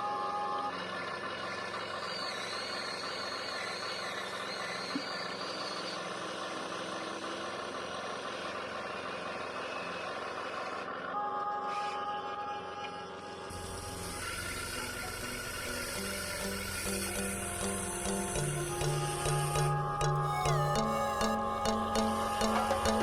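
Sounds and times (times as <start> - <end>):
mechanical whirring: 0.0 - 8.1, 13.5 - 23.0
faint wavering whine: 11.3 - 23.0.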